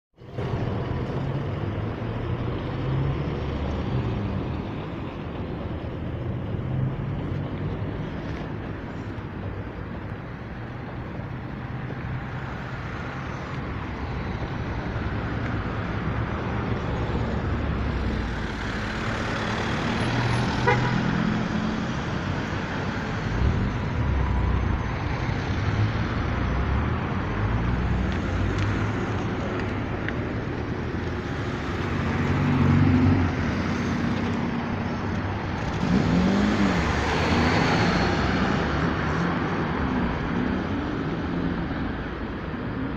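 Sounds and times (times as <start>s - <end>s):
city traffic passing: 0.2s - 42.9s.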